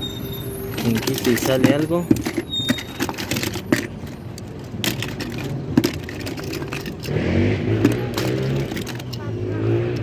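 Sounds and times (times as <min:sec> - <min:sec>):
toy cars clinking together: 0:00.1 - 0:07.2, 0:07.8 - 0:09.3.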